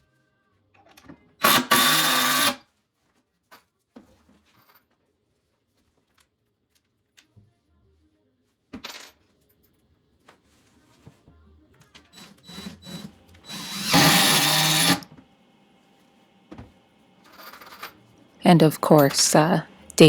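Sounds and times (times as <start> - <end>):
power drill driving screw into wood: 1.4 - 2.6, 12.2 - 15.1.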